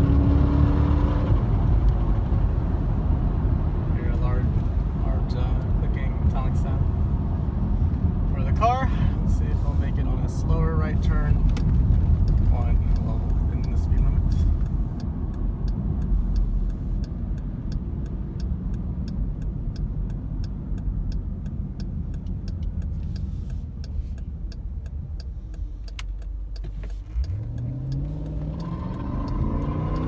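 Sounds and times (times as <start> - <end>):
car engine in cabin: 0.0 - 30.0
tyres on road: 0.0 - 30.0
light ticking: 10.9 - 30.0.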